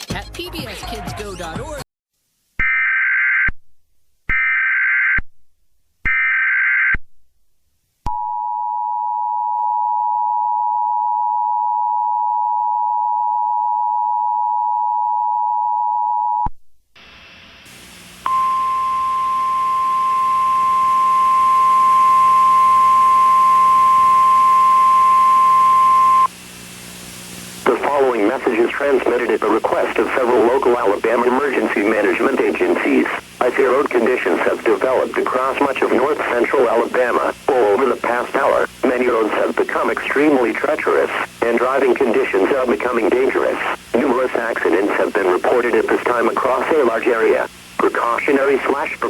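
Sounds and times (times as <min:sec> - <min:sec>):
radio hiss and hum: 0:17.0 - 0:49.0
two-tone attention signal: 0:18.2 - 0:26.3.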